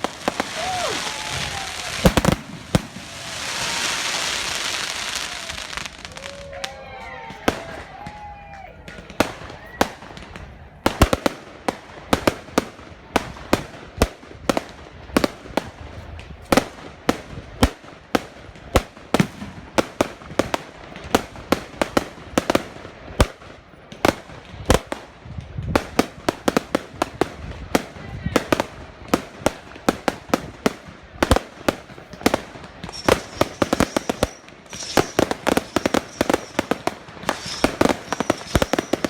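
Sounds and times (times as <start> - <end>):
fireworks banging: 0.0 - 6.5, 8.8 - 39.0.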